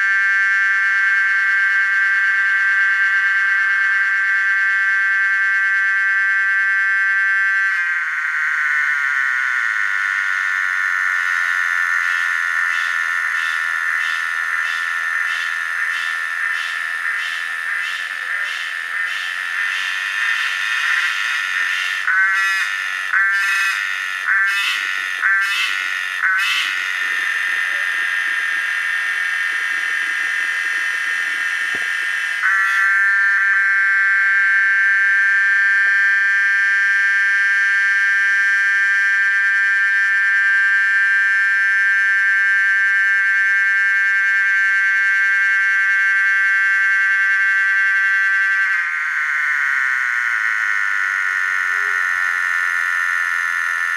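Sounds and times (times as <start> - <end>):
loud continuous drone: 0.0 - 53.9
cicada buzzing: 8.2 - 33.6, 48.6 - 53.9.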